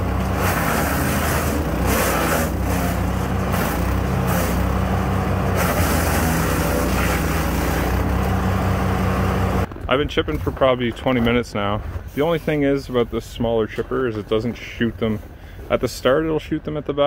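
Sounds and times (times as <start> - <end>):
wood chipper engine running: 0.0 - 9.8
branches being chipped: 0.1 - 8.6.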